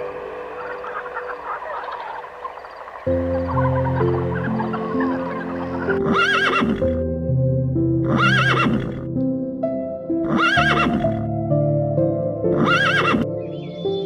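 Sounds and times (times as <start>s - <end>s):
background music sustained chords: 0.0s - 14.0s
horse whinnying: 6.0s - 7.0s, 8.0s - 9.0s, 10.2s - 11.2s, 12.6s - 13.3s.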